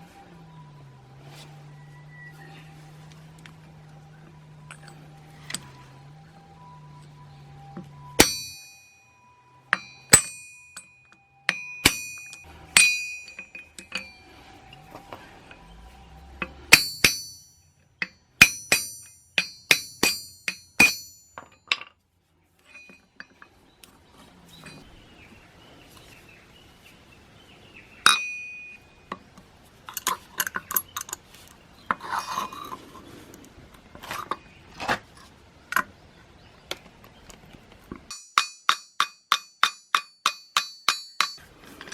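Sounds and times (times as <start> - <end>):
metal parts clinking: 3.6 - 5.8, 9.7 - 15.6, 22.6 - 23.6, 29.9 - 31.3.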